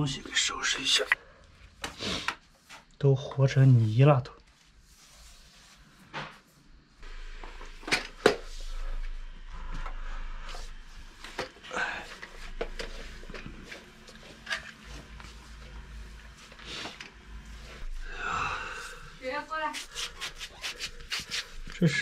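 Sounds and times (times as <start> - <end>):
rubbing and wiping: 3.5 - 6.6, 19.2 - 22.0.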